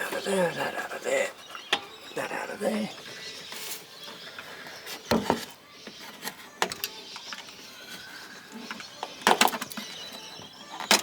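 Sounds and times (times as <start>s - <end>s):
small parts clicking and knocking: 6.6s - 7.5s, 8.7s - 9.9s, 10.7s - 11.0s.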